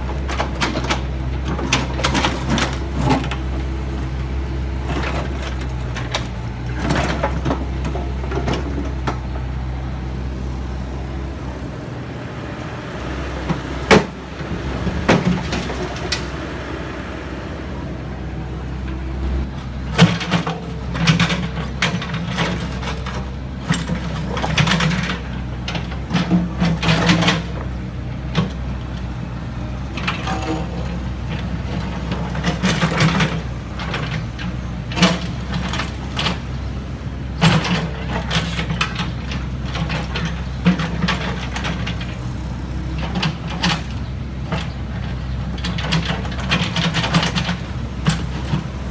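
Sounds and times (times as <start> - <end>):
diesel engine running: 0.0 - 48.9
sharp metallic clanks: 30.0 - 31.1.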